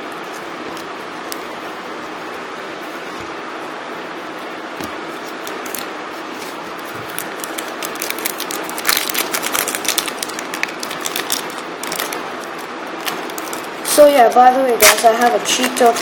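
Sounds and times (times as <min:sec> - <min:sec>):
card packets crinkling: 0:05.3 - 0:13.8.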